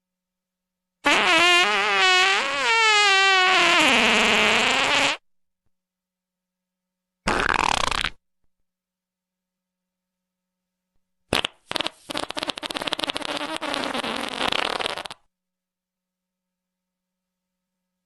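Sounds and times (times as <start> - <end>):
farts: 1.0 - 5.2, 7.2 - 8.2, 11.3 - 15.3.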